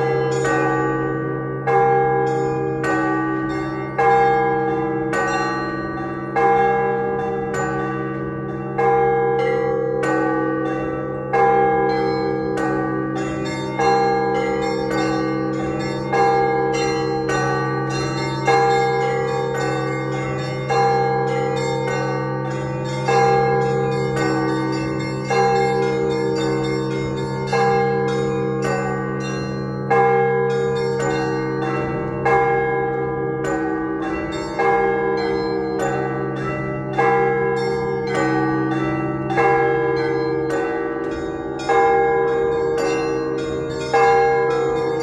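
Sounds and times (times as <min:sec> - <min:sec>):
heavy church bell strikes: 0:00.0 - 0:45.0
small bells chiming rapidly: 0:10.1 - 0:32.6, 0:33.4 - 0:45.0.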